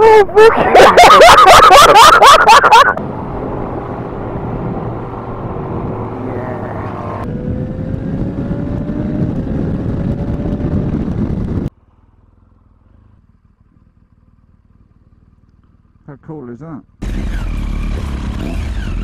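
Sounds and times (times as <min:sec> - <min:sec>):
road noise: 0:00.0 - 0:19.0
motorcycle engine: 0:01.7 - 0:19.0
wind noise: 0:07.2 - 0:11.7.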